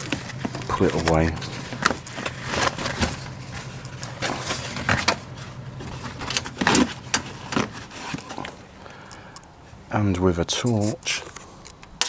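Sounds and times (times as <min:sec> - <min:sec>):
plastic sheet crinkling and snapping: 0:00.0 - 0:09.4.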